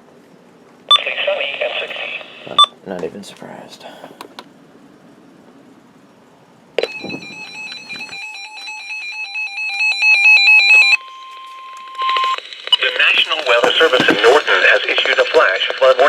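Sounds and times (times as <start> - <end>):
radio hiss: 0.9 - 2.7, 12.4 - 16.0
steady warning tone: 6.8 - 15.0.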